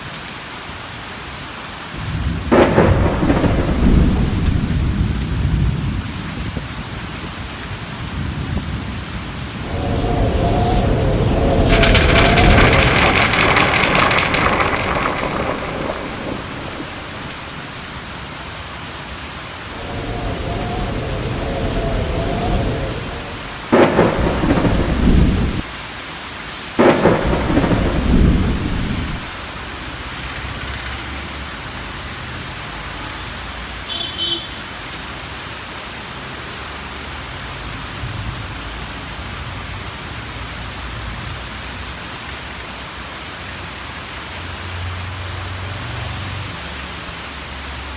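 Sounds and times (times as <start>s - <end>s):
steady rain: 0.0s - 47.9s
thunder rolling: 2.0s - 6.6s, 8.2s - 18.6s, 19.6s - 25.9s, 26.8s - 29.4s
loud thunderclaps: 2.0s - 6.7s, 8.1s - 18.4s, 19.6s - 25.9s, 26.8s - 29.4s.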